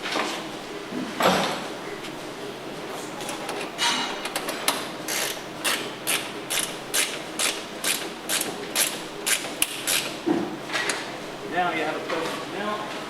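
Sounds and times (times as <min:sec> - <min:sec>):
ratchet tool clicking: 0:05.1 - 0:10.1.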